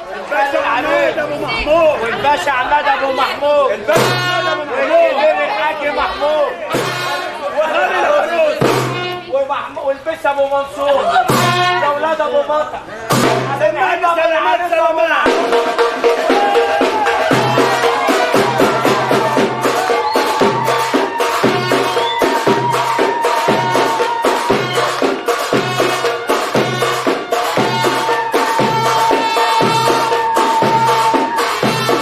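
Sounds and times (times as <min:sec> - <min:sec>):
hand percussion beat: 0:03.9 - 0:04.6, 0:06.7 - 0:07.4, 0:08.6 - 0:09.3, 0:11.2 - 0:11.8, 0:15.2 - 0:32.0.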